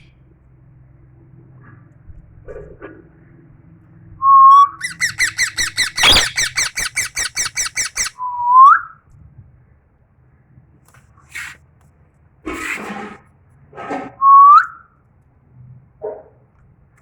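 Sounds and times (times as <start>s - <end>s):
parrot whistling and chirping: 4.2s - 9.0s, 14.2s - 14.8s
parrot squawk: 4.8s - 8.2s.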